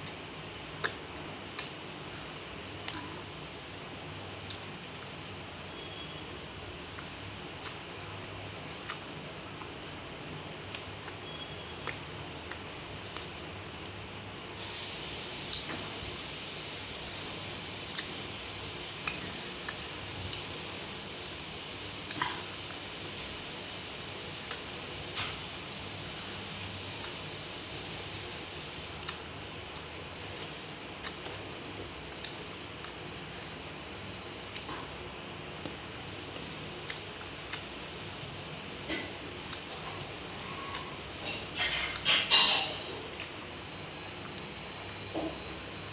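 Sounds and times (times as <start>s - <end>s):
steady hiss: 14.4s - 29.2s, 36.0s - 43.5s.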